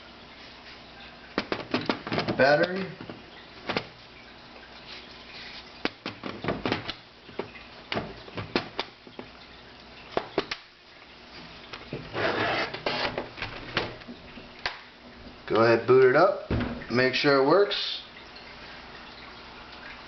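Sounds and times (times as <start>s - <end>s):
rubbing and sliding: 12.0s - 13.3s.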